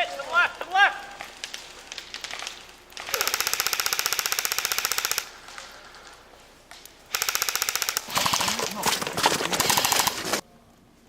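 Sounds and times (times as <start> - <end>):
airsoft rifle firing bursts: 1.4 - 5.6, 7.1 - 10.4.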